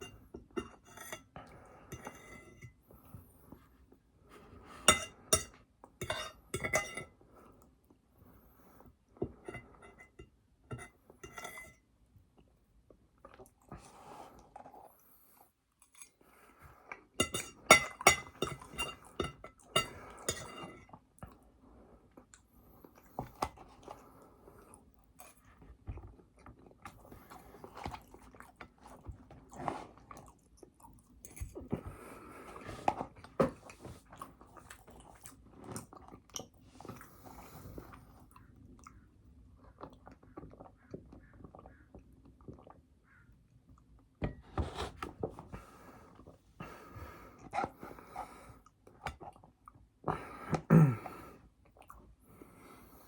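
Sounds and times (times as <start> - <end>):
chewing and crunching food: 12.3 - 44.2, 45.4 - 50.7, 51.3 - 53.0.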